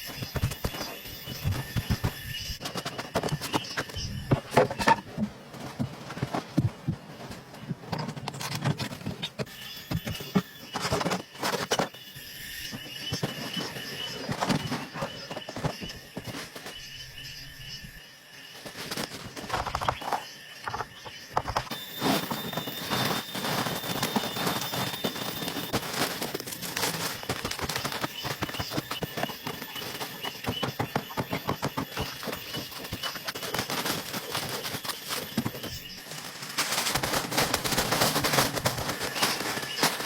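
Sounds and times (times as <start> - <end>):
patter of small sharp impacts: 18.6 - 40.0.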